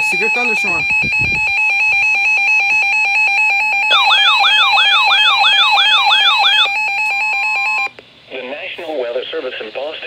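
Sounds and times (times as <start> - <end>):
steady alarm tone: 0.0 - 7.9
warbling siren tone: 0.0 - 7.9.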